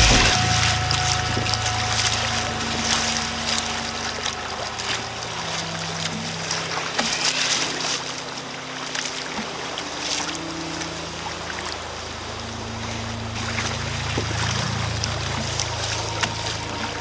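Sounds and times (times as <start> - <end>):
wind noise on microphone: 0.0 - 7.0.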